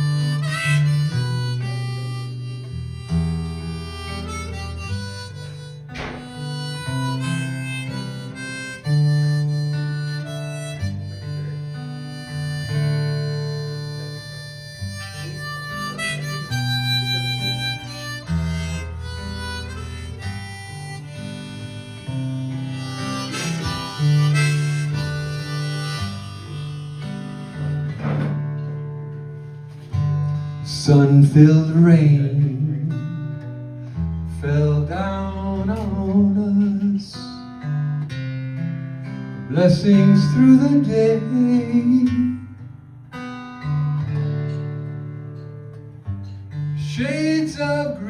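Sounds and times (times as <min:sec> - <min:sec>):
lead instrument melody: 0:00.0 - 0:30.7
acoustic guitar: 0:00.0 - 0:48.0.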